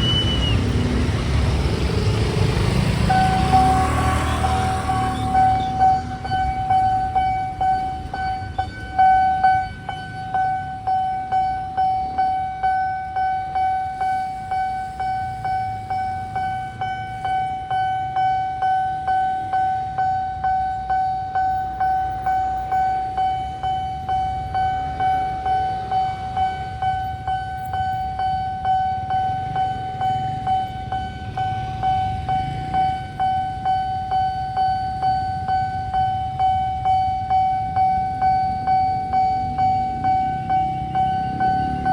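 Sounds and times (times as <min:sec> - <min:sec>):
level crossing alarm pulsing: 0:00.0 - 0:41.9.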